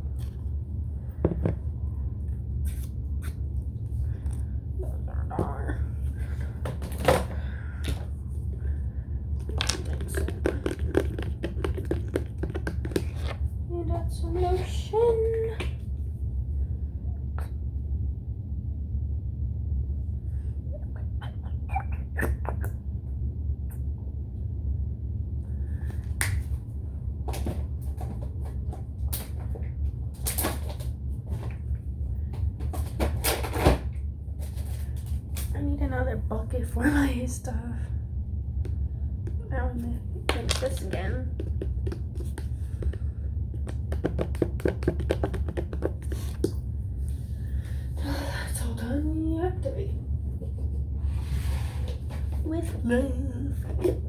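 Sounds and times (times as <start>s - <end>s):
steady low hum: 0.0s - 54.0s
containers clicking and rustling: 9.4s - 13.5s, 40.3s - 46.5s.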